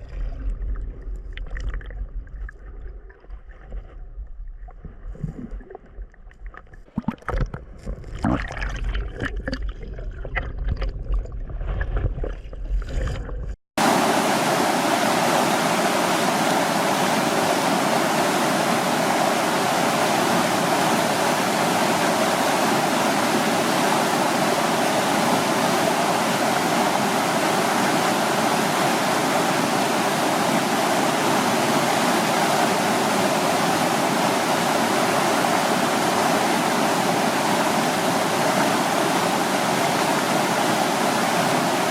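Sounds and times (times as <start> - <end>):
stream pouring over waterfall: 13.8 - 41.9.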